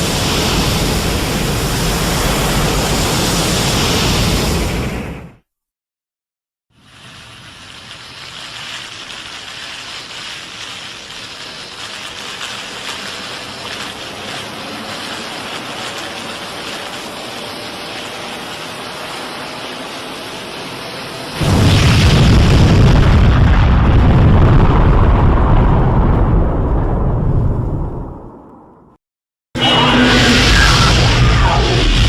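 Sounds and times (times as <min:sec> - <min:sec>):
long rushing hiss: 0:00.0 - 0:04.9, 0:06.8 - 0:21.4.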